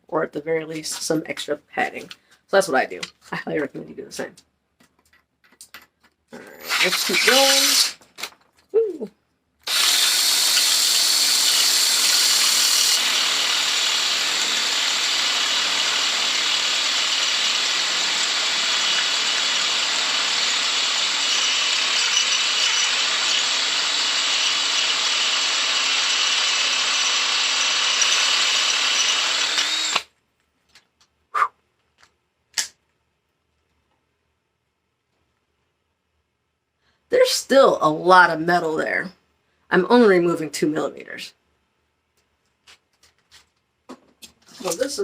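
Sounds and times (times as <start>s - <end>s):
power tool cutting metal: 6.5s - 8.0s, 9.7s - 30.0s.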